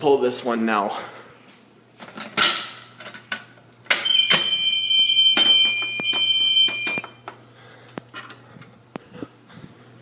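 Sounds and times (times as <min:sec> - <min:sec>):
fire alarm pull station clack: 0:03.9 - 0:07.2
fire alarm high-pitched tone: 0:04.0 - 0:07.2.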